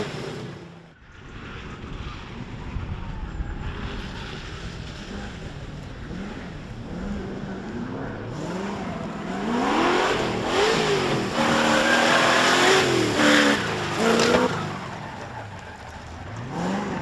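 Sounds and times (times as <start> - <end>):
rally car engine revving: 3.7 - 17.0.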